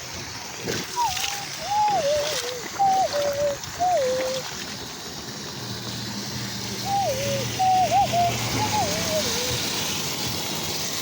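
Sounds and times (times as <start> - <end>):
water draining through drain: 0.0 - 11.0
sliding whistle-like notes: 1.0 - 4.4, 6.8 - 9.6.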